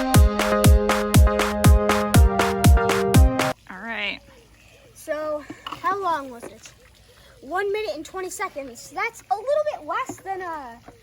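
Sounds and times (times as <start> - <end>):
held synth chords: 0.0 - 3.6
kick drum beat: 0.0 - 3.6.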